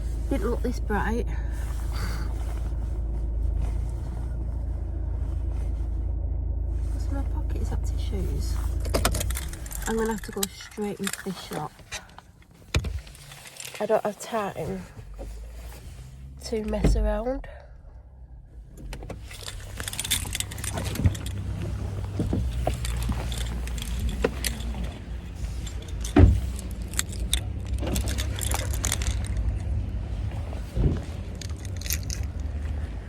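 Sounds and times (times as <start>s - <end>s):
steady low rumble: 0.0s - 13.3s, 14.4s - 33.0s
small clicks and rattles: 7.0s - 15.4s, 18.8s - 30.0s, 30.7s - 32.8s
keys jangling: 8.7s - 11.7s, 19.2s - 29.6s, 31.3s - 32.6s.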